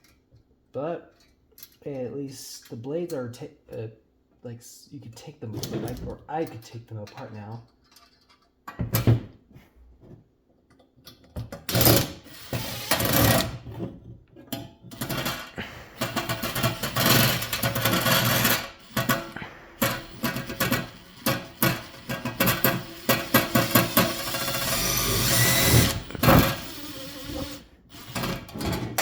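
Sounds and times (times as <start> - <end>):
metal clicks and scrapes: 14.5 - 29.0.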